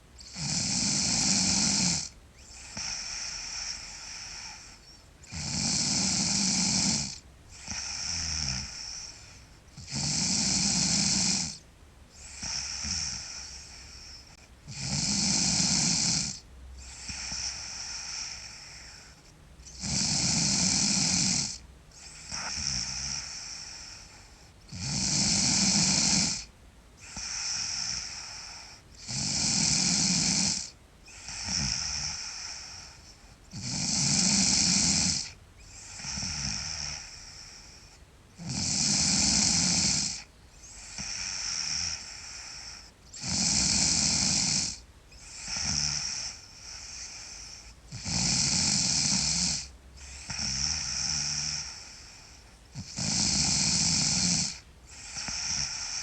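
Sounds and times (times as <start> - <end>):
girl snoring loudly: 0.2 - 4.7, 5.3 - 11.6, 12.2 - 24.1, 24.7 - 37.8, 38.4 - 56.0
soft hissy breath: 1.5 - 5.4, 6.2 - 10.0, 11.5 - 14.7, 16.3 - 19.8, 21.0 - 24.8, 26.3 - 29.1, 30.6 - 33.6, 34.2 - 38.4, 39.4 - 43.2, 44.2 - 48.4, 49.1 - 56.0.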